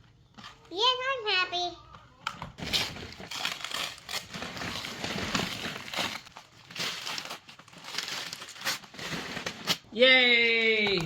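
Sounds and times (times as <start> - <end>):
packaging crinkling: 2.6 - 9.8.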